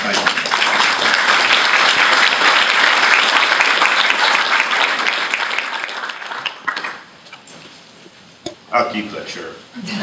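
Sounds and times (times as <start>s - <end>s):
audience applauding: 0.0s - 7.2s.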